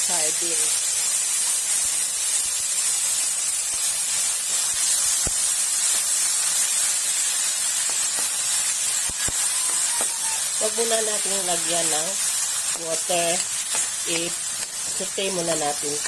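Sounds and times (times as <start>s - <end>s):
fish sizzling in a pan: 0.0s - 16.0s.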